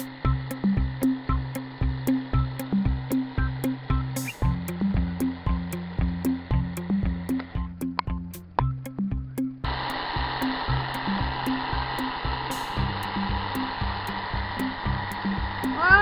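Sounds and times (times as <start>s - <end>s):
background music with steady beat: 0.0s - 16.0s
small electric motor whirring: 9.7s - 16.0s.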